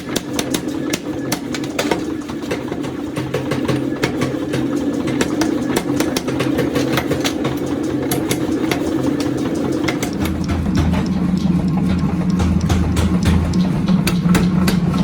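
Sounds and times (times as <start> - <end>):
machinery humming: 0.0 - 15.0
sharp metal knocks: 3.2 - 15.0.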